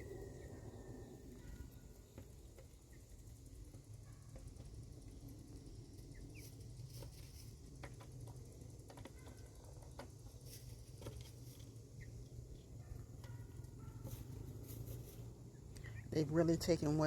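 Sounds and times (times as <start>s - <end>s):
hens scratching and tapping: 1.4s - 17.0s
soft hen chirps: 15.5s - 16.2s.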